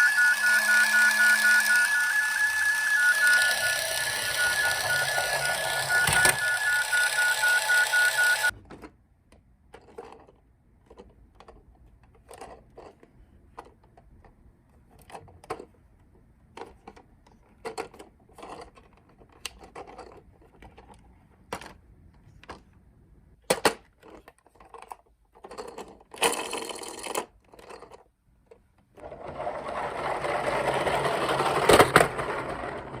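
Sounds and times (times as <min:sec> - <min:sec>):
toy cars rolling rumble: 0:00.0 - 0:08.5, 0:24.0 - 0:28.1, 0:29.0 - 0:33.0
two-tone toy siren: 0:00.0 - 0:08.5
toy cars clicking and knocking: 0:00.0 - 0:08.6, 0:09.3 - 0:15.8, 0:16.5 - 0:21.8, 0:23.5 - 0:28.6, 0:29.6 - 0:33.0.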